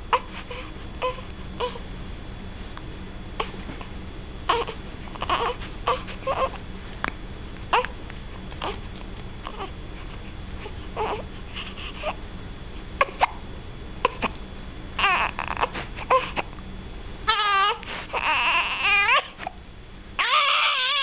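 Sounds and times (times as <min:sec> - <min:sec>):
baby whimpering: 0:00.1 - 0:01.8, 0:03.4 - 0:03.9, 0:04.5 - 0:06.6, 0:07.7 - 0:08.0, 0:08.6 - 0:09.8, 0:10.6 - 0:12.2, 0:14.0 - 0:14.4, 0:15.0 - 0:16.6, 0:17.3 - 0:19.6, 0:20.2 - 0:21.0
baby crying: 0:04.5 - 0:06.6, 0:07.7 - 0:08.0, 0:11.0 - 0:11.3, 0:15.0 - 0:16.5, 0:17.3 - 0:19.5, 0:20.2 - 0:21.0.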